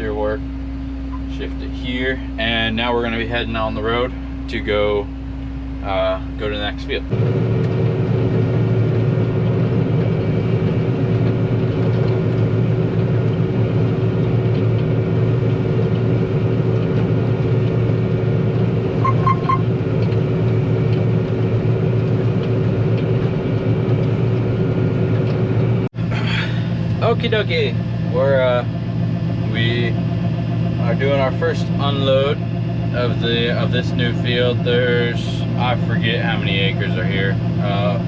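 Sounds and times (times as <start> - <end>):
combine harvester engine drone: 0.0 - 38.0
quick electronic beeps: 19.0 - 19.7.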